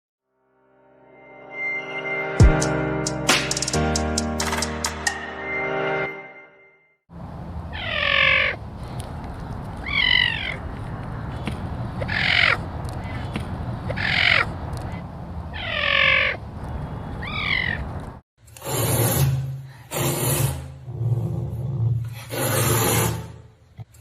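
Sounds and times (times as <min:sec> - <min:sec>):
cat bird-like call: 0:07.7 - 0:08.6, 0:09.8 - 0:10.7, 0:13.9 - 0:14.5, 0:15.5 - 0:16.4, 0:17.2 - 0:17.9.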